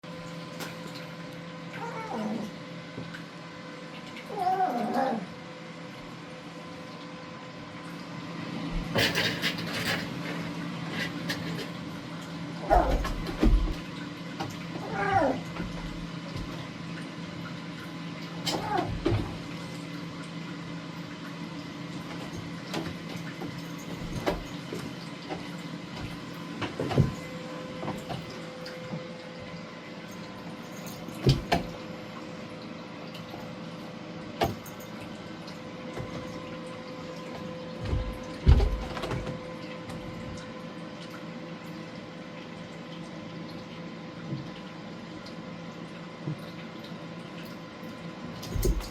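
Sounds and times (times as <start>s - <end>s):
thumps and knocks on cat tower: 37.8s - 39.4s.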